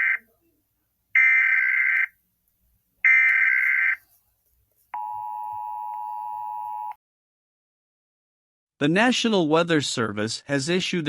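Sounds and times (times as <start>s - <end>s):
steady alarm tone: 0.0s - 0.2s, 1.2s - 2.1s.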